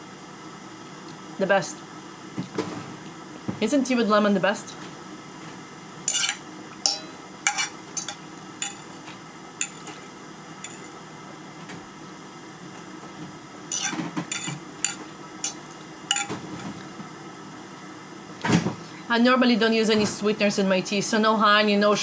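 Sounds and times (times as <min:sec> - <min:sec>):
cutlery clinking on plates: 0:06.1 - 0:10.0, 0:10.6 - 0:10.9, 0:13.7 - 0:16.8.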